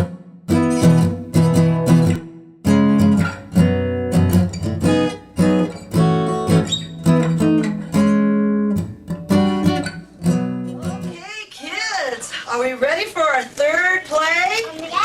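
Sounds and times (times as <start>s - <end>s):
acoustic guitar strumming: 0.0s - 11.4s.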